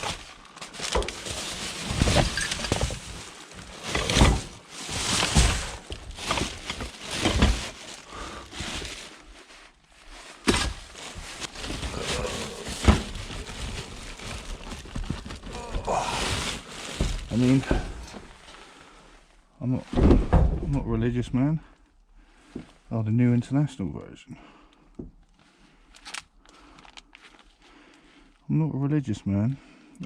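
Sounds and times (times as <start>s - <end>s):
objects knocking and thudding: 0.0s - 8.0s, 10.4s - 18.4s, 19.9s - 20.9s
rustling of objects handled: 0.0s - 23.0s, 24.6s - 28.4s.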